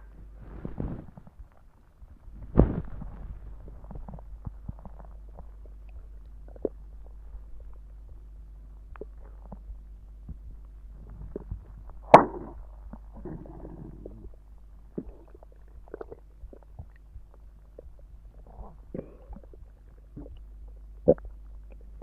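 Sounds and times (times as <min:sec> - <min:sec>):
steady low hum: 0:00.0 - 0:22.0
stomach gurgling: 0:00.0 - 0:22.0
loud sharp pop: 0:12.1 - 0:12.5.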